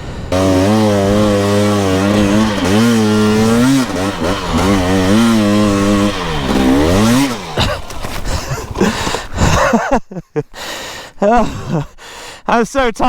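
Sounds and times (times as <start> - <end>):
dirt bike engine revving: 0.1 - 9.8.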